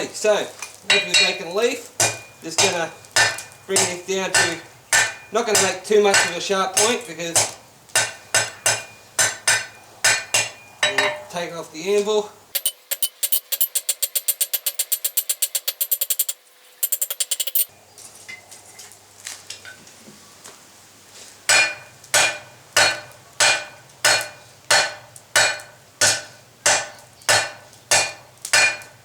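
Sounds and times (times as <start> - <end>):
hammer ringing on anvil: 0.9 - 1.4, 8.0 - 11.4
small metal clinks: 12.6 - 17.7.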